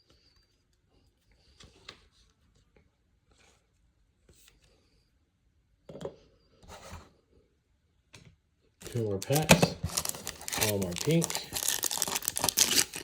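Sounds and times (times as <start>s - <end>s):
cards rubbing together: 8.8s - 13.0s.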